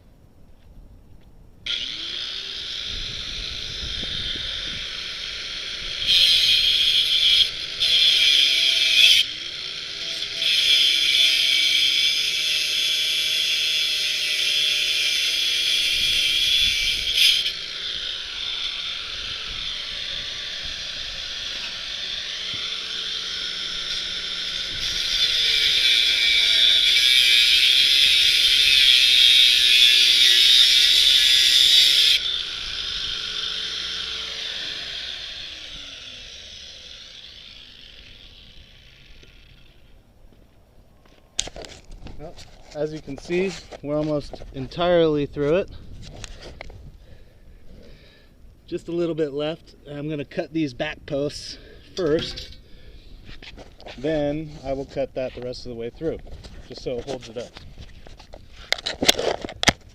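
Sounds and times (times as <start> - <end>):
power tool cutting steel tube: 1.7 - 40.0, 48.7 - 52.8.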